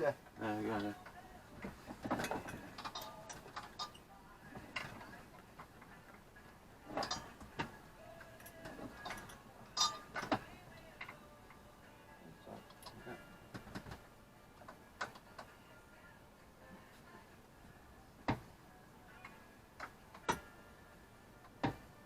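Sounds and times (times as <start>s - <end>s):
metal hand tools clinking: 2.2s - 4.0s, 6.9s - 7.4s, 8.4s - 10.4s.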